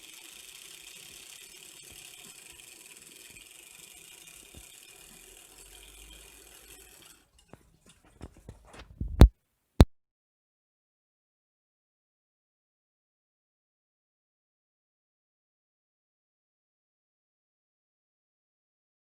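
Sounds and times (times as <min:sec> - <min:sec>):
model train motor whirring: 0:00.0 - 0:08.7.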